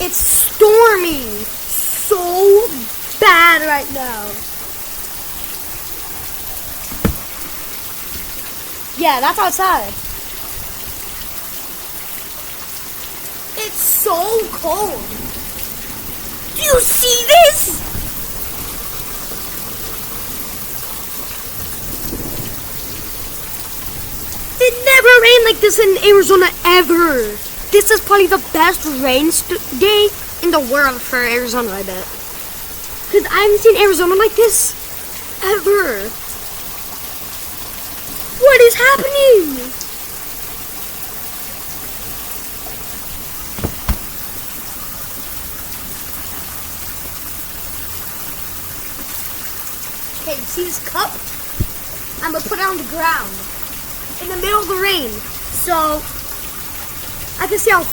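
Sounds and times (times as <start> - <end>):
heavy rain falling: 0.0 - 57.9
sharp taps: 6.9 - 8.3, 43.6 - 44.3.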